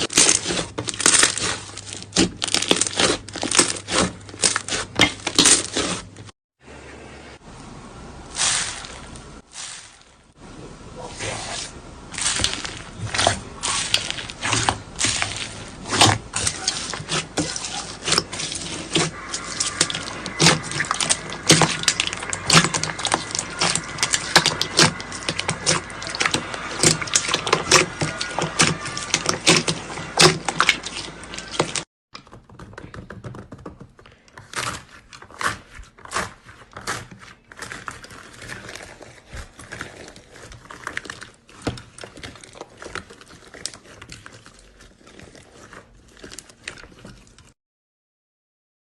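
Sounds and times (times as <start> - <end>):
slime squeezed crackling and popping: 0.0 - 6.1, 12.1 - 31.8, 34.4 - 47.4.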